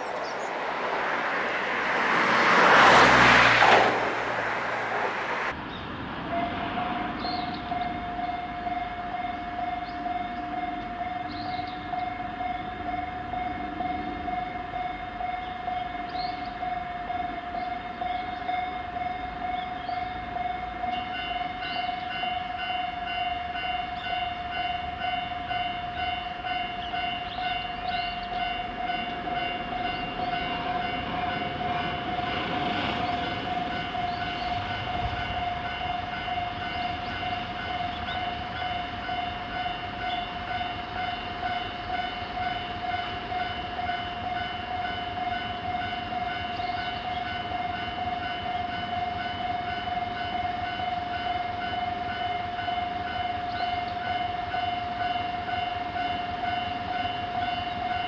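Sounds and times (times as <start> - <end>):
train passing: 0.0 - 5.6, 20.1 - 58.0.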